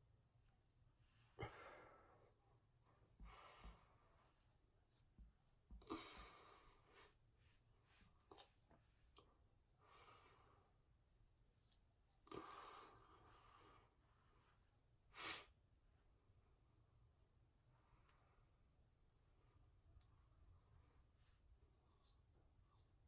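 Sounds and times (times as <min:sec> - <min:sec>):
faint breathing: 0:01.3 - 0:02.4, 0:03.0 - 0:04.4, 0:05.8 - 0:07.2.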